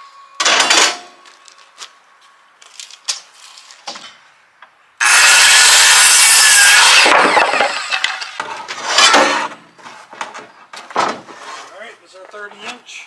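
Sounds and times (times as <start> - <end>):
saw cutting wood: 5.0 - 9.6.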